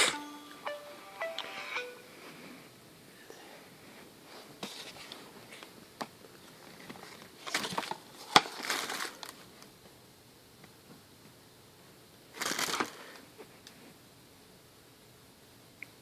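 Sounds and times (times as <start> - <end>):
crinkling rustles: 6.3 - 9.7, 12.4 - 13.9.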